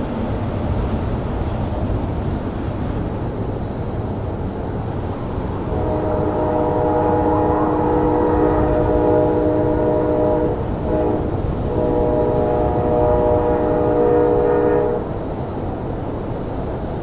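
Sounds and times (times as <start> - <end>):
train rumbling: 0.0 - 17.0
locomotive horn chord: 5.6 - 15.1.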